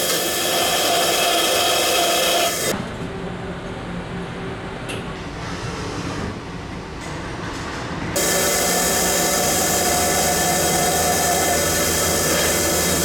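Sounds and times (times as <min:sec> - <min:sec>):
high cutting whine: 0:00.0 - 0:02.7, 0:08.2 - 0:13.0
machining center cutting steel: 0:00.0 - 0:02.7, 0:08.2 - 0:13.0.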